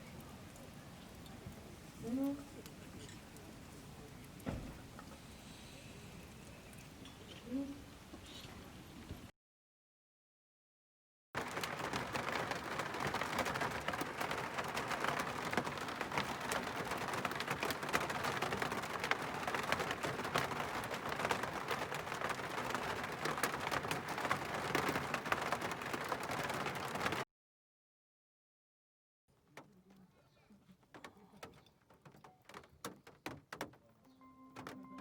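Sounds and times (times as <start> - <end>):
campfire crackling and popping: 0.0 - 5.4, 11.4 - 27.2.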